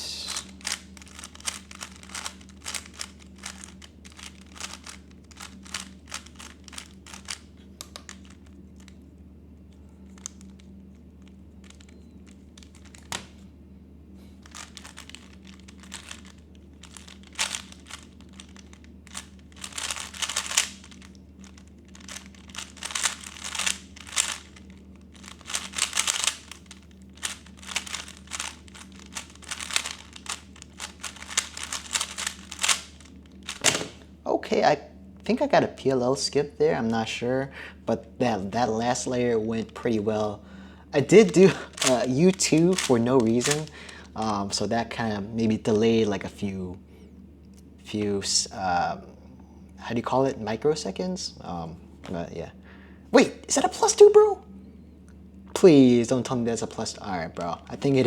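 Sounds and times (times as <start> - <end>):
low steady hum: 0.0 - 58.0
puzzle cube clicking: 0.3 - 8.4, 12.6 - 13.3, 14.4 - 34.0, 41.1 - 43.8.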